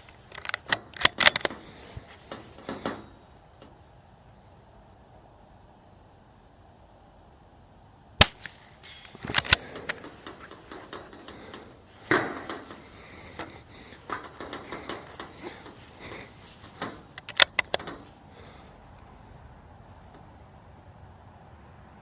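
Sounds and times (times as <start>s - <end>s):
rifle bolt clicking: 0.0s - 1.6s, 8.2s - 11.0s, 16.8s - 18.1s
rifle handling noises: 0.0s - 4.4s, 8.2s - 19.2s
rifle shot: 8.2s - 9.6s.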